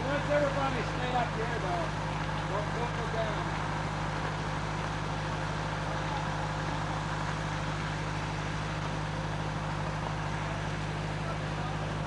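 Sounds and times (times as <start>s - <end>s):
low mechanical hum: 0.0s - 12.0s.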